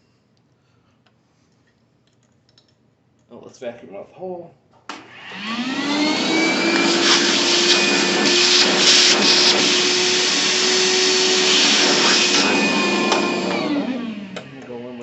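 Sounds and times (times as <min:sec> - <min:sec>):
vacuum cleaner running: 0:04.9 - 0:15.0.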